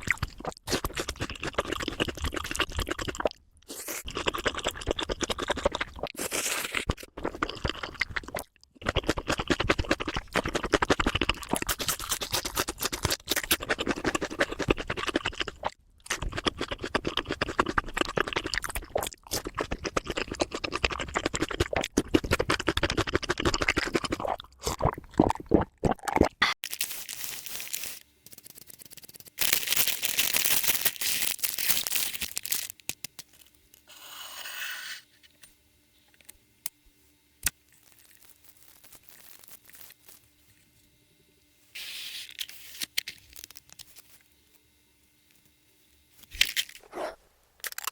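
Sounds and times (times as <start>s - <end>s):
crunching and chewing crispy food: 0.0s - 33.9s, 37.4s - 40.3s, 42.8s - 44.2s.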